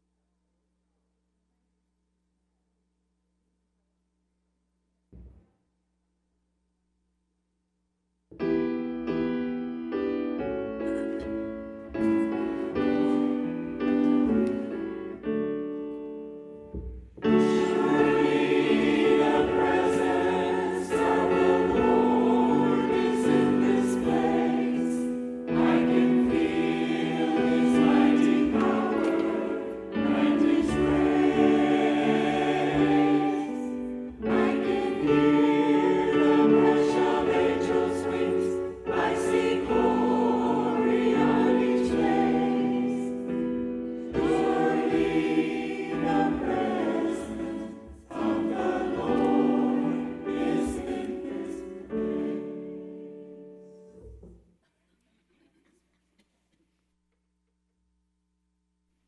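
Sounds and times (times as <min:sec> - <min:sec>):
choir singing: 0:17.2 - 0:53.5.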